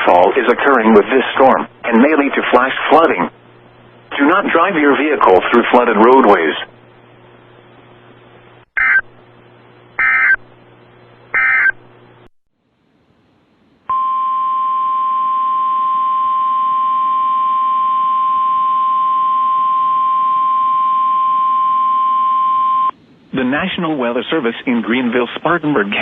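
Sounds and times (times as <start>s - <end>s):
digital data bursts: 10.0s - 10.4s, 11.4s - 11.8s.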